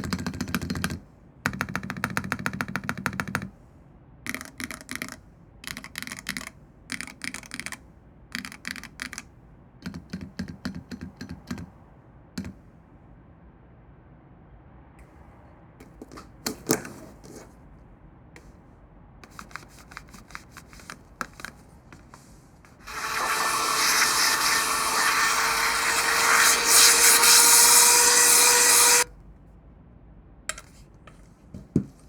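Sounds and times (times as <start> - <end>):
mechanical keyboard keystrokes: 4.3 - 7.8, 8.4 - 9.2.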